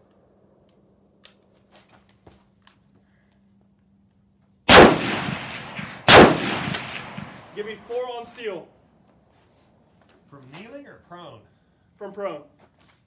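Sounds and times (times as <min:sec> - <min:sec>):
rifle shots with echo: 0:04.7 - 0:07.8.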